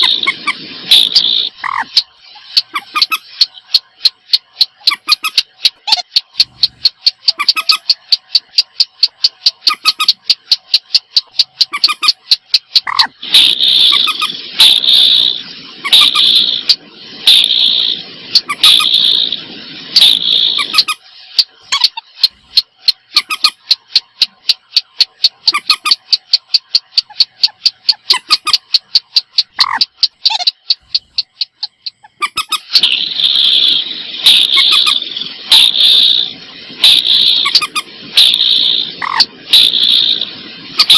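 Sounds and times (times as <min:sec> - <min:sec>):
harsh raspy bird calls: 0:00.0 - 0:03.8, 0:07.2 - 0:07.9, 0:09.6 - 0:10.3, 0:11.4 - 0:19.4, 0:20.0 - 0:22.4, 0:23.1 - 0:23.6, 0:27.0 - 0:40.9
rapid sharp ticking bird notes: 0:00.0 - 0:40.9.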